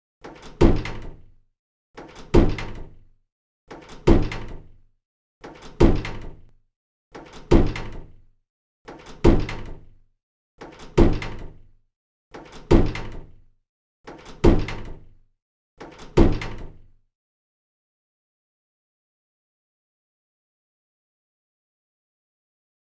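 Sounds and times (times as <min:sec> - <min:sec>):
door click and heavy thud: 0:00.2 - 0:01.4, 0:02.0 - 0:03.1, 0:03.7 - 0:04.8, 0:05.4 - 0:06.5, 0:07.2 - 0:08.2, 0:08.9 - 0:10.0, 0:10.6 - 0:11.7, 0:12.4 - 0:13.4, 0:14.1 - 0:15.1, 0:15.8 - 0:16.9.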